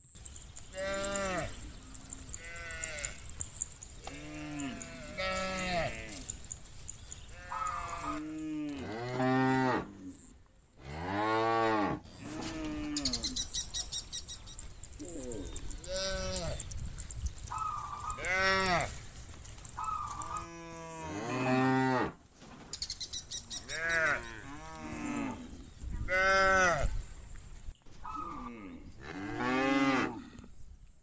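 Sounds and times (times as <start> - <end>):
cows mooing: 0.7 - 3.4, 4.0 - 6.5, 7.3 - 9.9, 17.6 - 19.1, 19.8 - 22.2, 23.7 - 26.9, 28.2 - 30.3.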